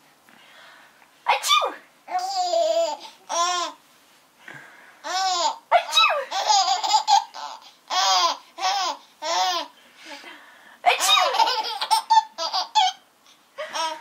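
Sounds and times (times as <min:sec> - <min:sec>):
baby laughing: 0:02.1 - 0:03.8, 0:05.0 - 0:10.2, 0:10.9 - 0:13.0, 0:13.6 - 0:14.0.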